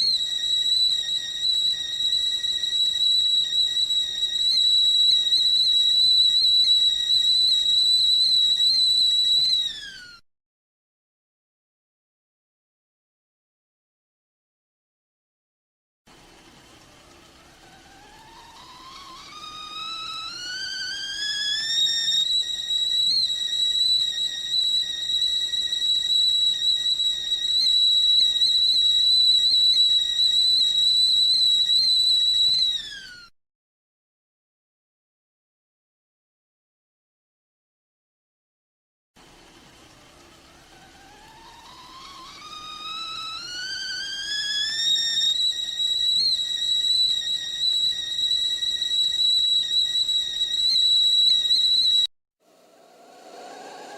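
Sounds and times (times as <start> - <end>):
kettle whistling: 0.0 - 10.2, 16.1 - 33.3, 39.2 - 53.9.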